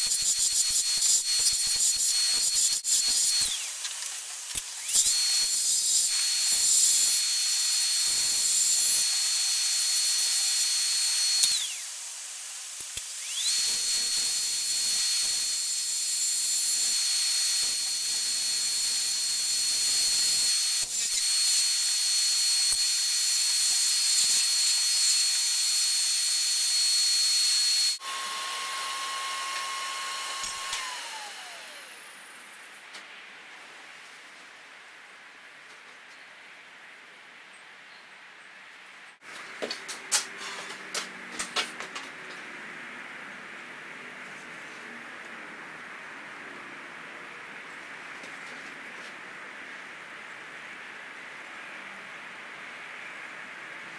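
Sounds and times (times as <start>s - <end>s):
wood lathe whining: 0.2s - 3.7s, 4.8s - 11.8s, 13.2s - 32.0s.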